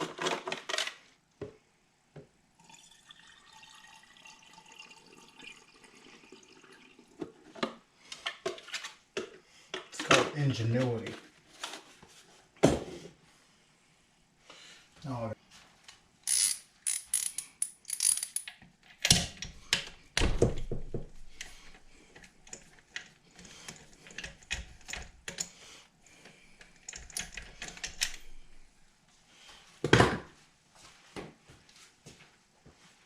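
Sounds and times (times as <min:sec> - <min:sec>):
ratchet wrench clicking: 0:16.3 - 0:18.5.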